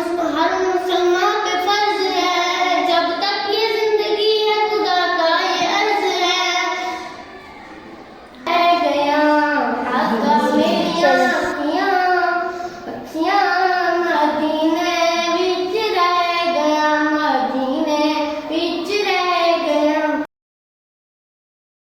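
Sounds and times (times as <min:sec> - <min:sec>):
girl singing: 0:08.5 - 0:12.3.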